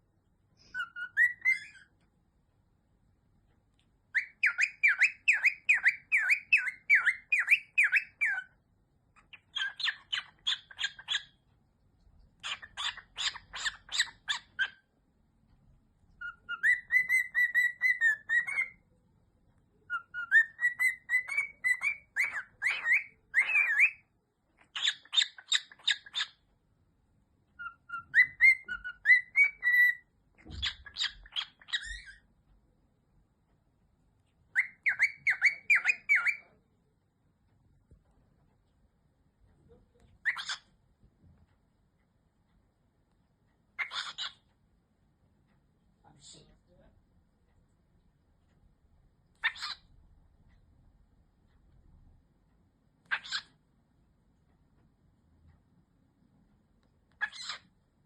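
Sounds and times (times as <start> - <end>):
pet bird whistling a tune: 0.6 - 2.0, 4.1 - 8.6, 9.2 - 11.4, 12.4 - 14.8, 16.2 - 18.8, 19.9 - 24.1, 24.7 - 26.4, 27.6 - 32.2, 34.5 - 36.5, 40.2 - 40.6, 43.8 - 44.4, 49.4 - 49.8, 53.1 - 53.5, 57.2 - 57.6.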